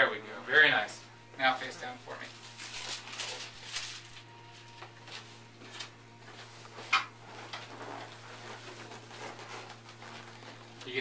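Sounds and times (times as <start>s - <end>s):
steady low hum: 0.0s - 11.0s
rustling and shuffling: 2.2s - 11.0s.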